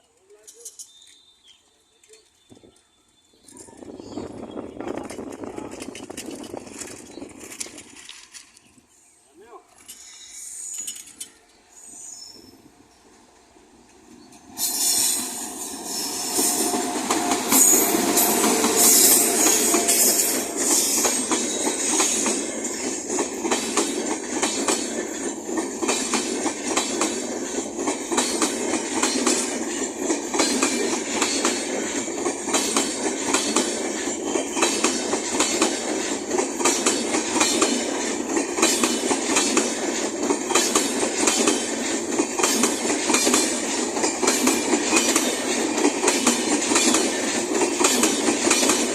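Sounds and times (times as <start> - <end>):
train passing at high speed: 10.0 - 48.9.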